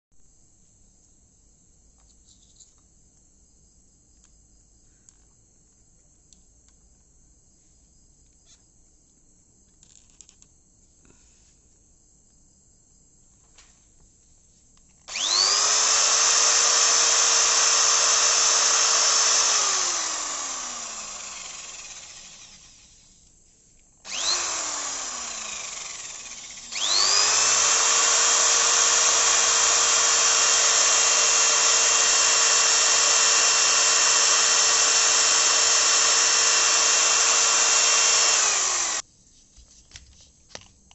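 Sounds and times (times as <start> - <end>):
electric drill motor whining: 15.1 - 23.2, 24.0 - 39.0.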